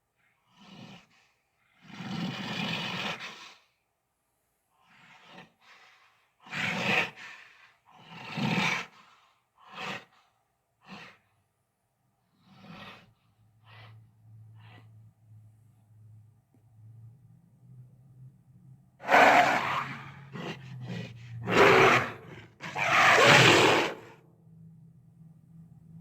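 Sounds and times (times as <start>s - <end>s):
breathy dinosaur roars and growls: 4.8s - 10.2s, 10.8s - 11.3s, 12.3s - 15.0s, 19.0s - 24.2s.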